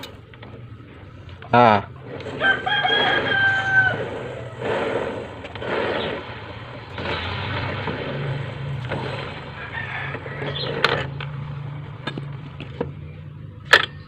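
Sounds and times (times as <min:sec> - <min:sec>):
rasping noisy bursts: 0:00.0 - 0:13.9
rooster crowing: 0:02.2 - 0:05.4, 0:09.0 - 0:11.6.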